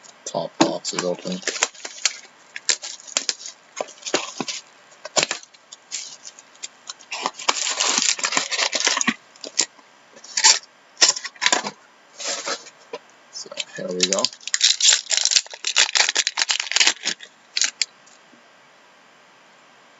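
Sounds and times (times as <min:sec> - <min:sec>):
cardboard and wrapping scraping: 0:00.7 - 0:12.8
cutting and tearing packaging: 0:00.9 - 0:09.7, 0:13.7 - 0:17.9.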